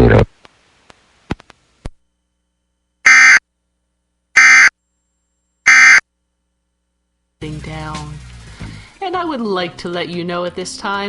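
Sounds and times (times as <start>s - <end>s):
buzzy digital data bursts: 3.1s - 3.4s, 4.4s - 4.7s, 5.7s - 6.0s.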